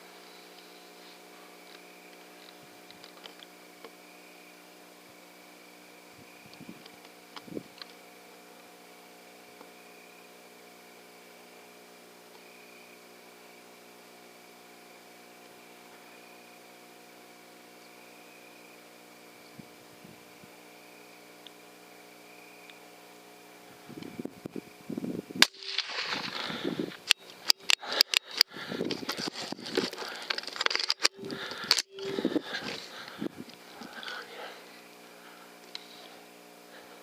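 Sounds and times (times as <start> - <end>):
faint electronic hum: 0.0 - 37.0
handling noise: 25.4 - 34.0.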